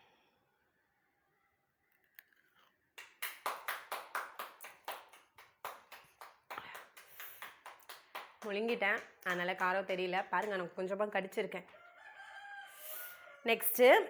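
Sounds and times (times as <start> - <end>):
hands clapping rhythmically: 3.0 - 10.8.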